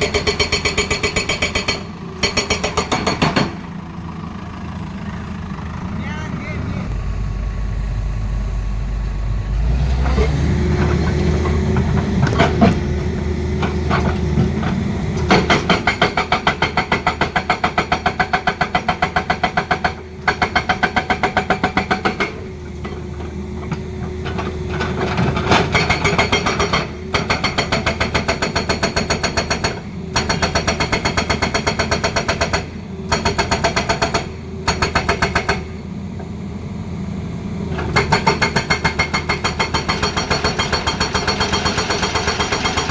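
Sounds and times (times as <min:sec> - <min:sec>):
hydraulic breaker hammering: 0:00.0 - 0:03.8, 0:10.7 - 0:22.5, 0:24.5 - 0:35.8, 0:37.8 - 0:42.9
excavator engine running: 0:00.0 - 0:42.9.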